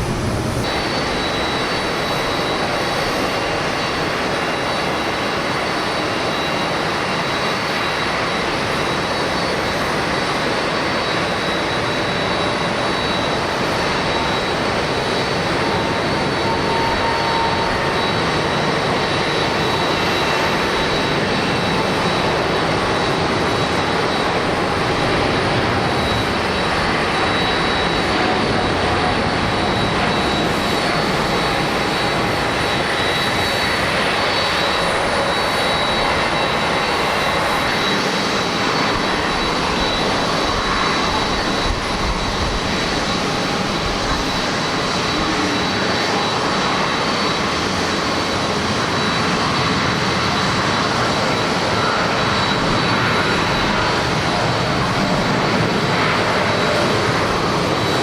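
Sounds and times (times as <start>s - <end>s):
wind on microphone: 0.0s - 6.1s
high engine whine: 0.0s - 58.0s
jet engines roaring: 0.0s - 58.0s.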